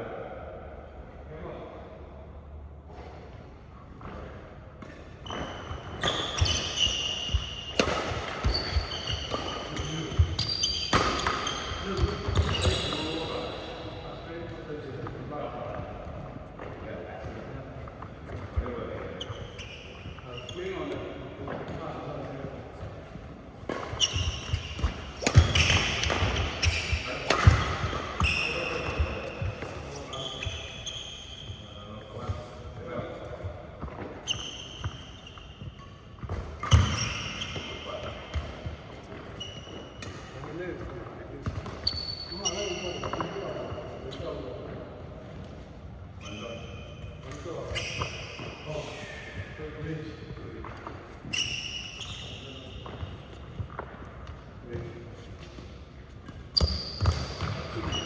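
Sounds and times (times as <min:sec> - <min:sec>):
background noise: 0:00.0 - 0:58.0
shoes squeaking: 0:04.8 - 0:58.0
racket and footwork impacts: 0:07.3 - 0:12.7, 0:22.8 - 0:29.9.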